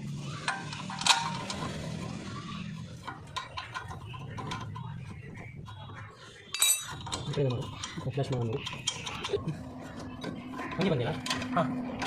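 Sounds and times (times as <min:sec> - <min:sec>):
hand tools clinking on metal: 0:06.5 - 0:09.4.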